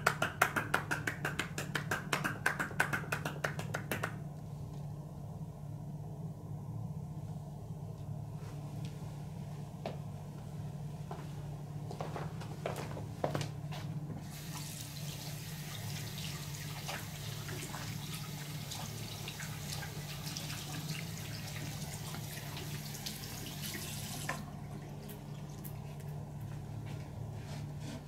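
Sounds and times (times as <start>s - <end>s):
steady low hum: 0.0s - 23.4s, 24.1s - 28.0s
running water: 14.3s - 26.0s.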